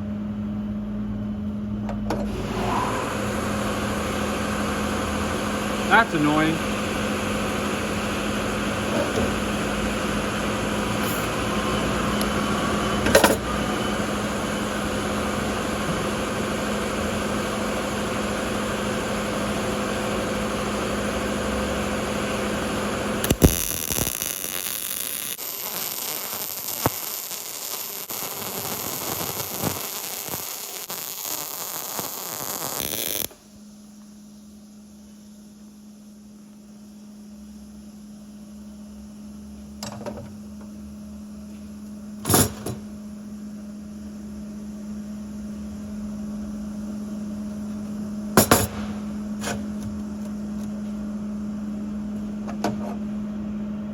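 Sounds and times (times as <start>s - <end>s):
machine humming: 2.4s - 35.0s
arc welding crackling: 23.1s - 33.4s.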